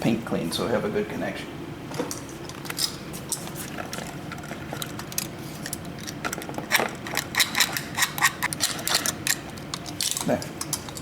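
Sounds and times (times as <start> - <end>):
knife scraping wire: 6.7 - 9.5.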